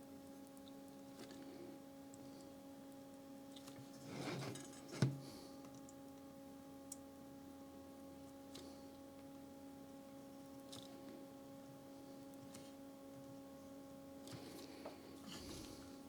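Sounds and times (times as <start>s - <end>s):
steady electrical hum: 0.0s - 16.0s.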